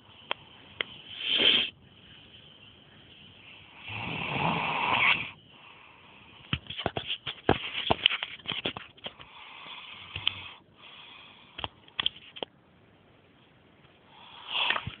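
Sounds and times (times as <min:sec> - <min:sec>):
person snoring: 0:03.7 - 0:05.4.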